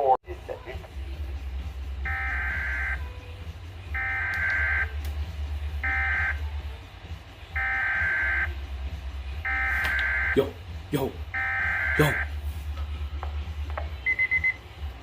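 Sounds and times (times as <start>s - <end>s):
harsh digital warbling tones: 11.4s - 12.3s.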